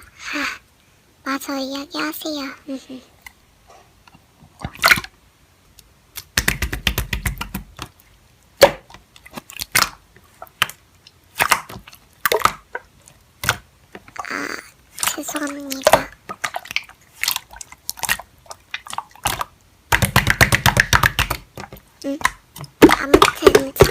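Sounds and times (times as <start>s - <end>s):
slime squelching by hand: 6.1s - 23.9s.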